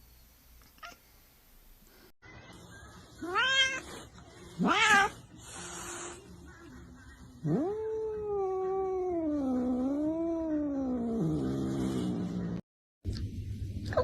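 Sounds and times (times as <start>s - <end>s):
cat yowling: 3.2s - 3.8s, 4.6s - 5.2s.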